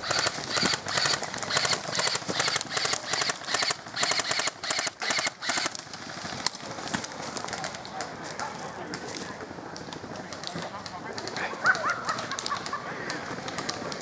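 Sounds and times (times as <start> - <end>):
airsoft guns firing bursts: 0.0 - 6.5.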